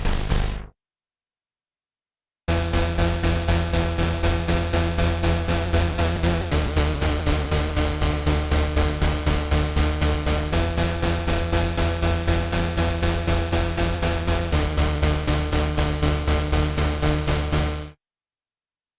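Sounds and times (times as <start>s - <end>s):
rhythmic synth noise pulses: 0.0s - 0.7s, 2.5s - 10.2s
sustained synth bass chord: 0.0s - 0.7s, 2.5s - 17.8s.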